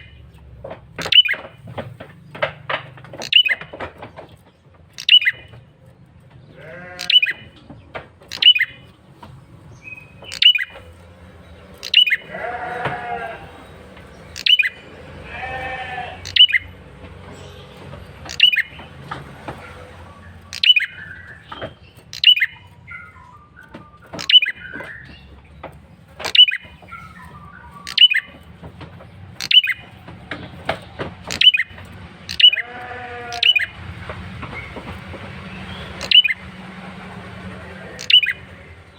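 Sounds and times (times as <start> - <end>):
sharp high bird calls: 1.0 - 1.6, 3.2 - 3.7, 4.9 - 5.6, 6.5 - 7.6, 8.3 - 19.0, 19.6 - 25.4, 26.2 - 28.5, 29.3 - 33.8, 35.5 - 36.5, 37.8 - 38.9.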